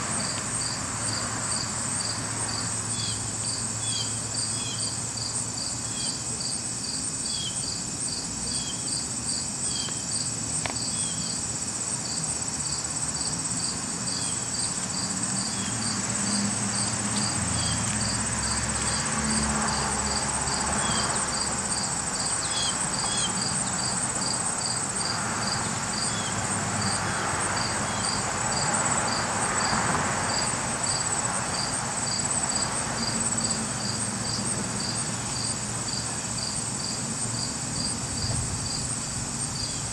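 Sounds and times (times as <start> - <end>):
crickets chirping: 0.0 - 39.9.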